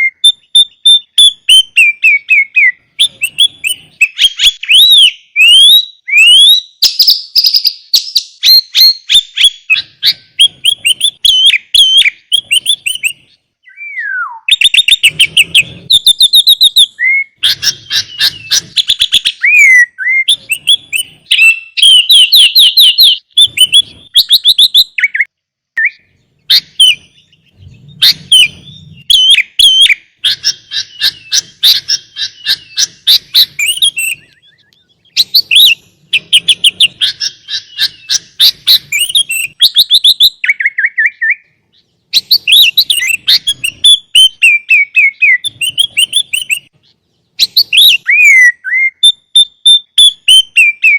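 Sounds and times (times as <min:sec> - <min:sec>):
bulbul singing chattering notes: 0:14.5 - 0:24.9, 0:25.9 - 0:40.7.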